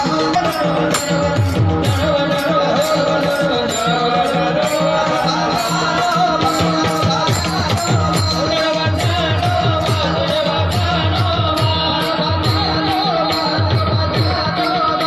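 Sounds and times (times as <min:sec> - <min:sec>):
man singing devotional melody: 0:00.0 - 0:15.0
percussion beat: 0:00.0 - 0:15.0.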